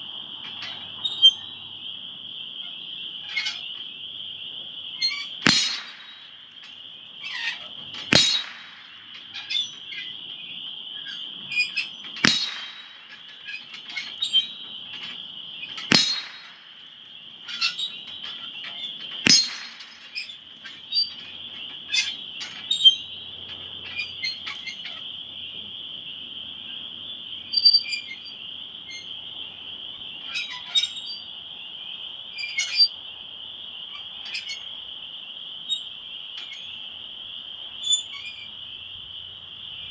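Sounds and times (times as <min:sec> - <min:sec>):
insects trilling: 0:00.0 - 0:39.9
gunshots: 0:05.4 - 0:06.6, 0:08.0 - 0:09.3, 0:12.2 - 0:13.4, 0:15.9 - 0:16.9, 0:19.3 - 0:20.2.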